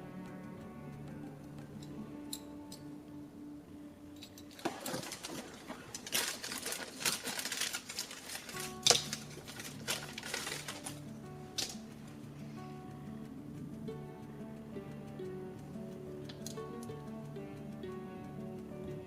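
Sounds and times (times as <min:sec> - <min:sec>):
background music: 0:00.0 - 0:19.0
plastic toy pieces clicking: 0:04.1 - 0:12.0, 0:16.3 - 0:17.0
rustling packaging: 0:04.4 - 0:11.9.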